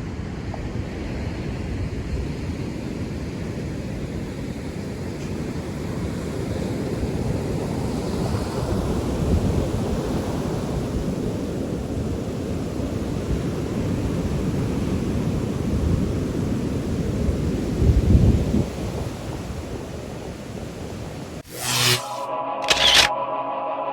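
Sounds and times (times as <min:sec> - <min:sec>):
ocean surf on beach: 0:00.2 - 0:21.4.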